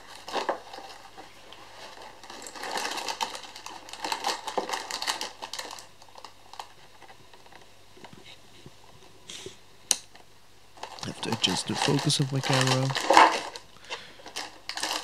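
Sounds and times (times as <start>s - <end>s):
cardboard and plastic packaging tearing: 0.0s - 1.1s, 1.7s - 7.0s, 10.8s - 15.0s.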